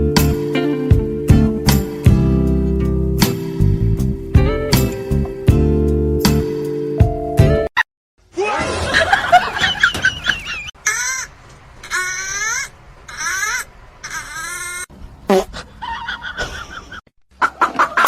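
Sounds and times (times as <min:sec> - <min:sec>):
animal calling: 0:10.2 - 0:16.5.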